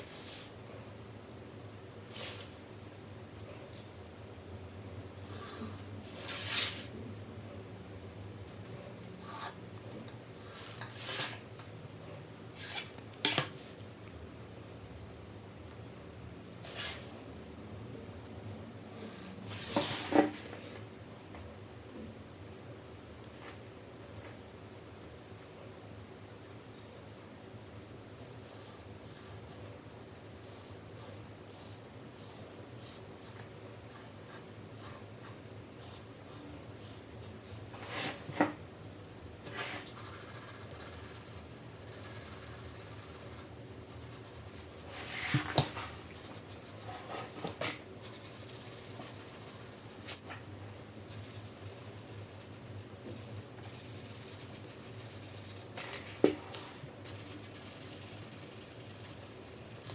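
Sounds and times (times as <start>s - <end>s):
pencil shading on paper: 39.0s - 44.9s, 48.0s - 50.2s, 51.1s - 55.8s, 57.1s - 59.9s.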